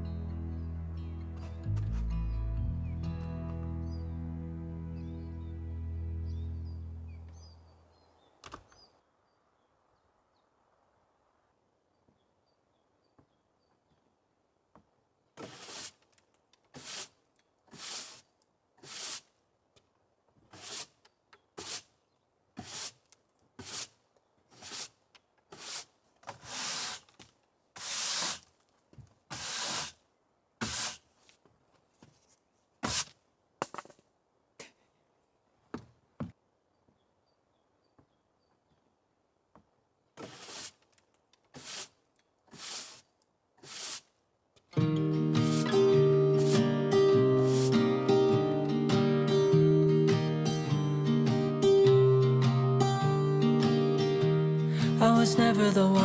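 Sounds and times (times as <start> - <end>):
scraping or brushing strokes: 15.4 - 16.0, 16.8 - 19.3, 20.5 - 21.0, 22.6 - 23.0, 23.6 - 27.1, 27.8 - 28.4, 29.3 - 30.0, 40.2 - 40.8, 41.6 - 44.1, 45.2 - 49.1.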